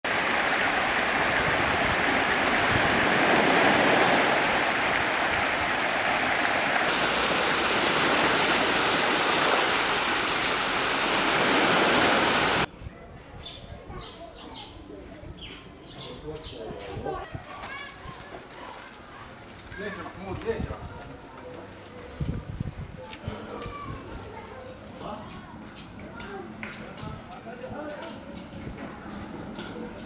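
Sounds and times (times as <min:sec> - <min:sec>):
flowing water rushing: 0:00.0 - 0:12.7
faint chirping: 0:06.9 - 0:12.7.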